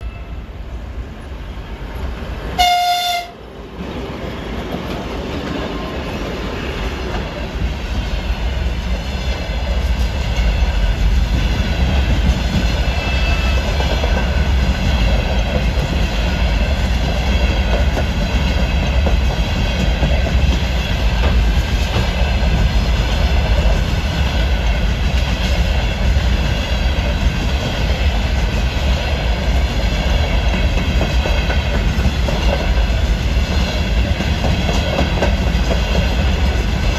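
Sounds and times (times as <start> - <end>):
freight train rolling past: 0.0 - 36.9
train horn blast: 2.6 - 3.4.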